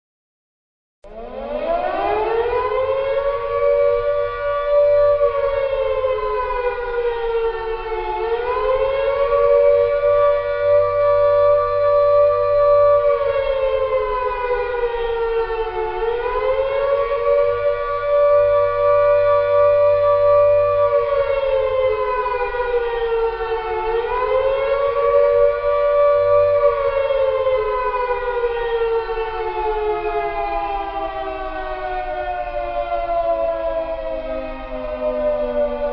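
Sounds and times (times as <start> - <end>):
air-raid siren wailing: 1.0 - 35.9.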